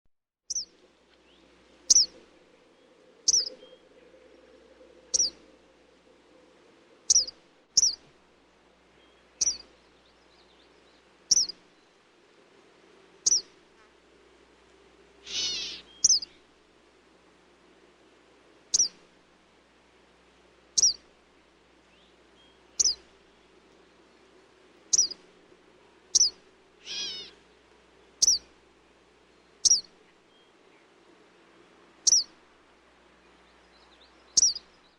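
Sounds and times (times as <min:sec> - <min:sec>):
bird calling: 0:00.5 - 0:08.2, 0:09.0 - 0:12.0, 0:13.2 - 0:13.6, 0:15.2 - 0:16.5, 0:18.7 - 0:19.0, 0:20.8 - 0:21.1, 0:22.4 - 0:24.2, 0:24.9 - 0:25.3, 0:26.1 - 0:27.5, 0:28.1 - 0:28.6, 0:29.3 - 0:30.9, 0:32.0 - 0:32.4, 0:33.8 - 0:34.8.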